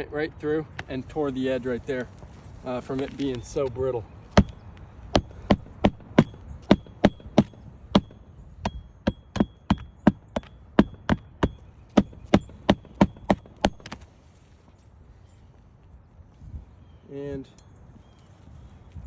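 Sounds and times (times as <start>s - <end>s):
hammer striking roofing nails: 4.3s - 14.0s.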